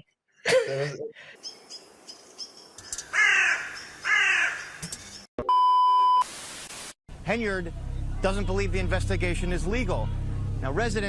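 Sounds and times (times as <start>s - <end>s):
crow cawing: 2.8s - 4.9s
high beep: 5.4s - 6.2s.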